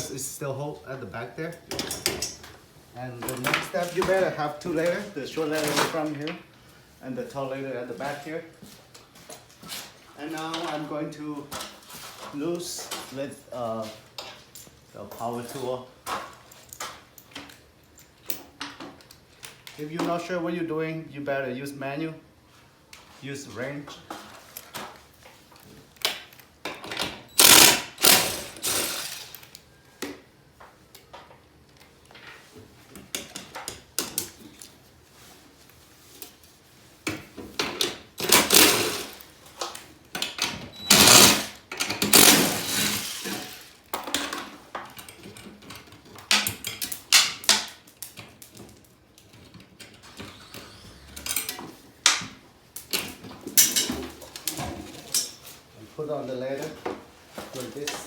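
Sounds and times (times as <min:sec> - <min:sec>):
power tool clattering: 0:27.4 - 0:29.4, 0:38.2 - 0:39.2, 0:40.8 - 0:43.7.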